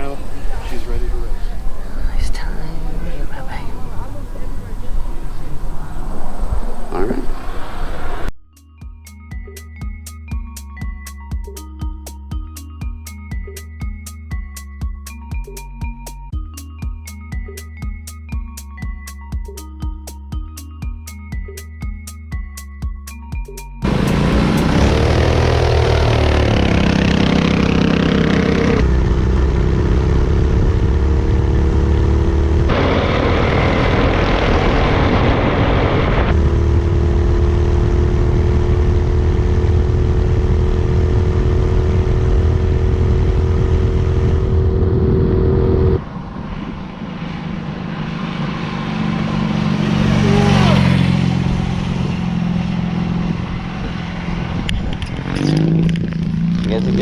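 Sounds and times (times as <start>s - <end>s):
wind rush: 0.0s - 8.3s, 32.7s - 37.1s, 50.8s - 56.4s
minibike engines running hard: 23.8s - 36.0s, 49.2s - 57.0s.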